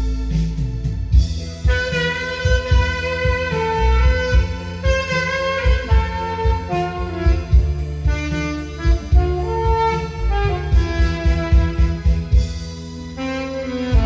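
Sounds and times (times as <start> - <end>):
keyboard backing: 0.0 - 14.0
saxophone melody: 0.0 - 14.0
steady drum beat: 0.0 - 14.0.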